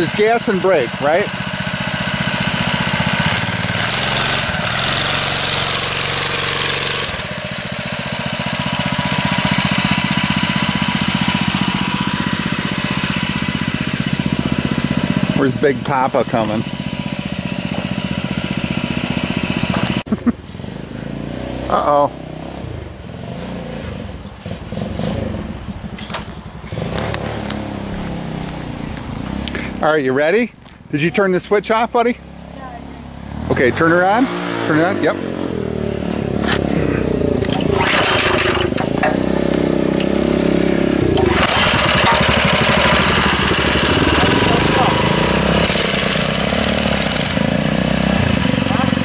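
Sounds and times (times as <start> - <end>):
small engine idling: 0.0 - 20.1, 36.4 - 49.0.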